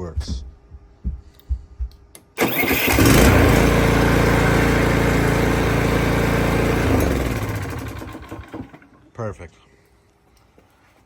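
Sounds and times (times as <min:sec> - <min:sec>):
lawn mower engine starting: 0:02.4 - 0:09.1.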